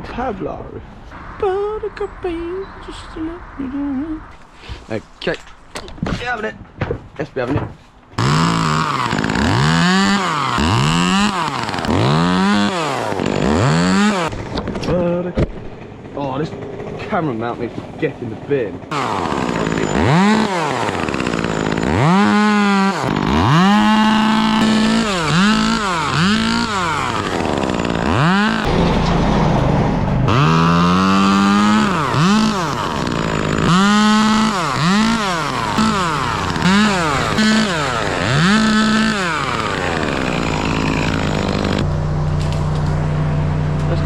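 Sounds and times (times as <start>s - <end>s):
chainsaw revving: 8.2s - 14.6s, 18.8s - 28.9s, 30.2s - 42.6s.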